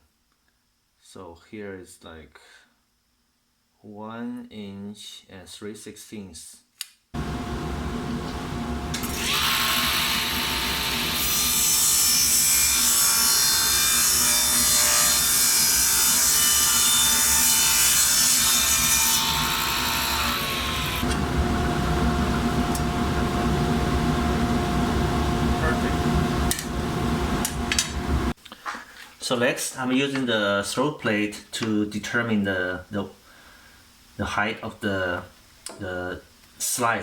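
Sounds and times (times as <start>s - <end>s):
table saw ripping plywood: 8.9s - 21.2s.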